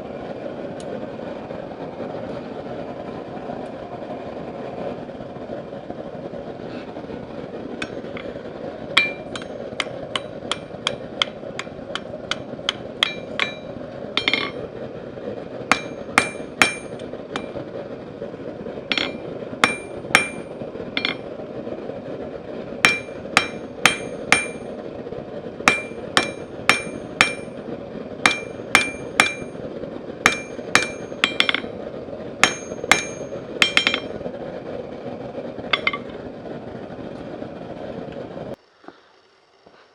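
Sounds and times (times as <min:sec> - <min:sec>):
steady background roar: 0:00.0 - 0:39.8
hammer striking steel on anvil: 0:09.0 - 0:14.6, 0:15.7 - 0:17.6, 0:18.9 - 0:21.2, 0:22.8 - 0:24.7, 0:25.7 - 0:27.6, 0:28.3 - 0:29.6, 0:30.3 - 0:31.7, 0:32.4 - 0:34.2, 0:35.8 - 0:36.1.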